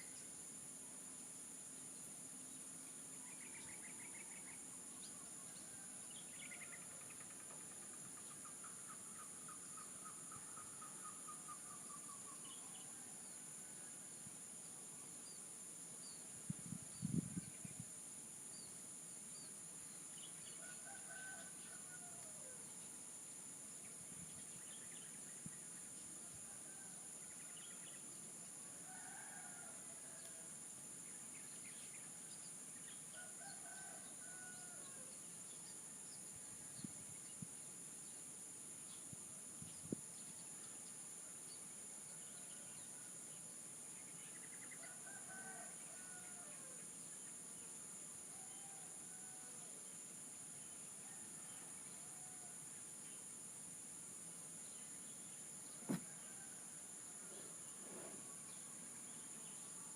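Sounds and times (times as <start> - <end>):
insects droning: 0.0 - 59.9
roosters crowing faintly: 55.8 - 58.5.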